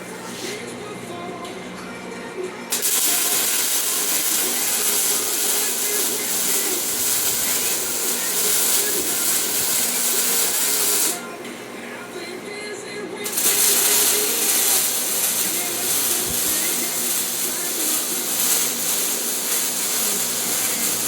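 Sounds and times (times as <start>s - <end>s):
welding arc hissing and crackling: 2.7s - 11.4s, 13.2s - 21.0s.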